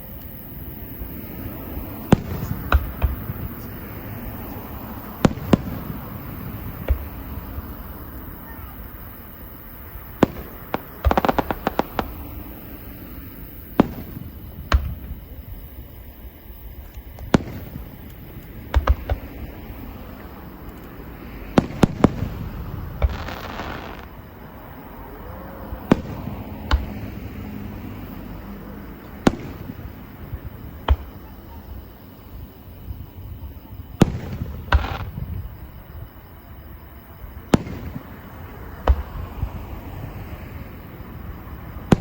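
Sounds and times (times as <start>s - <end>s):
fireworks crackling pops: 0.0s - 24.3s, 25.8s - 27.7s, 29.0s - 31.7s, 33.8s - 36.0s, 37.5s - 40.0s
hissing crackle: 0.0s - 24.4s
fireworks booming: 0.0s - 42.0s.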